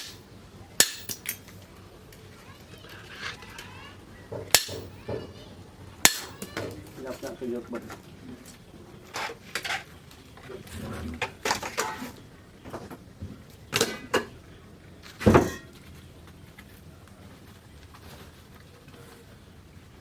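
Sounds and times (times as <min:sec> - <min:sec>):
metal tools knocking and clanking: 0:00.0 - 0:01.6, 0:04.3 - 0:05.3, 0:06.0 - 0:06.8.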